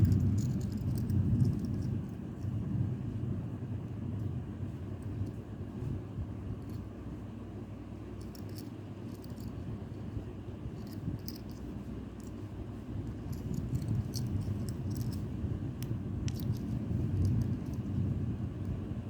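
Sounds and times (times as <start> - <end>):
key chain clicking and rattling: 0.0 - 2.6, 8.2 - 10.0, 10.7 - 15.4, 16.2 - 18.0
steady low rumble: 0.0 - 19.0.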